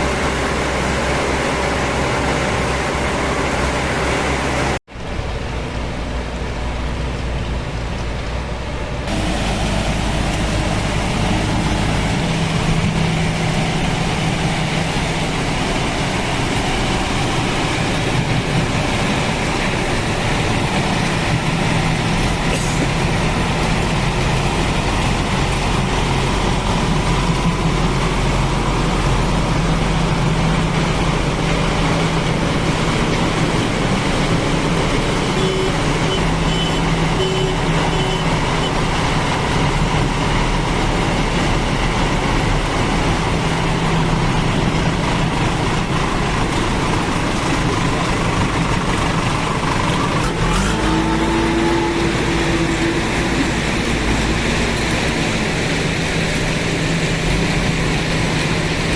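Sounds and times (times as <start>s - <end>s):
diesel engine running: 0.0s - 58.9s.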